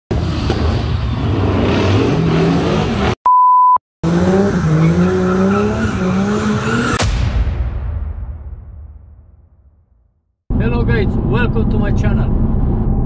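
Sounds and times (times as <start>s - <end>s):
car engine revving: 0.1s - 3.2s, 4.0s - 7.0s
steady electronic beep: 3.2s - 3.8s.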